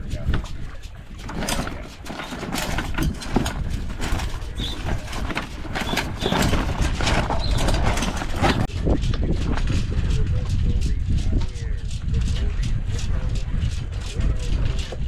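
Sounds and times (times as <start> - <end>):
knocks and clatter: 0.0 - 8.7
wind buffeting microphone: 0.0 - 15.0.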